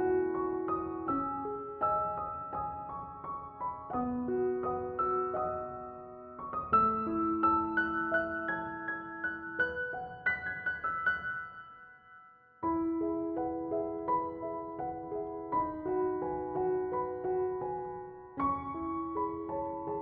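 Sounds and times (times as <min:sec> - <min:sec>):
gentle piano melody: 0:00.0 - 0:20.0.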